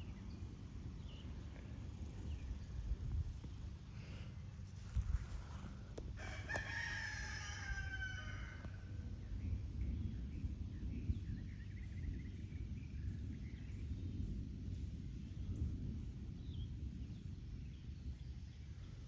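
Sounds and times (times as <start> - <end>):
steady low rumble: 0.0 - 19.0
rooster crowing: 6.2 - 8.9.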